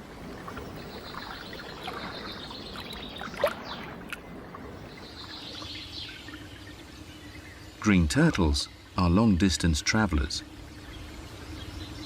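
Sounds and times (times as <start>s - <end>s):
water lapping and trickling: 0.0s - 9.0s.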